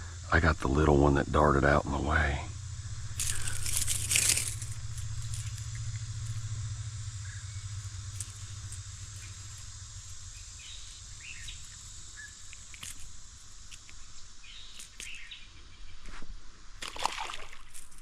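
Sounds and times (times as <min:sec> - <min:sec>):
background hiss: 0:00.0 - 0:18.0
bird chirps: 0:02.9 - 0:13.1, 0:13.8 - 0:16.0
rustling: 0:02.9 - 0:15.3
small clicks: 0:11.4 - 0:14.0.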